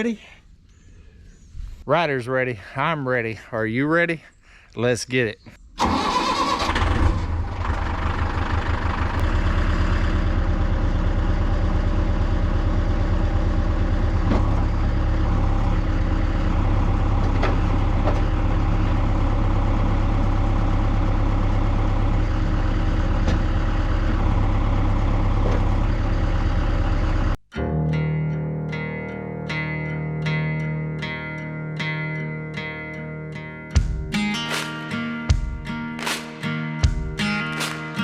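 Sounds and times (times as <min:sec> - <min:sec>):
tractor engine running: 0:05.8 - 0:27.4.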